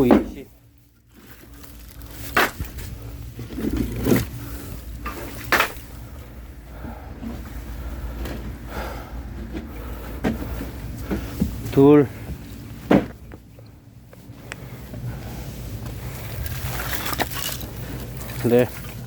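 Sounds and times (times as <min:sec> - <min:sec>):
low steady hum: 0:00.0 - 0:19.0
firewood knocking when set down: 0:12.9 - 0:13.2.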